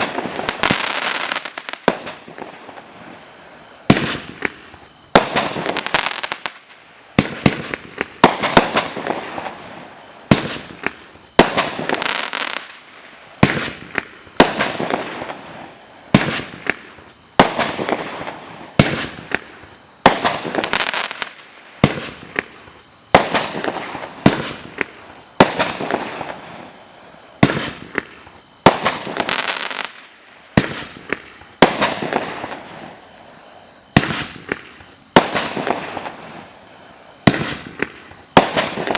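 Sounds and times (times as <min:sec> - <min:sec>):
fireworks bangs: 0:00.0 - 0:38.9.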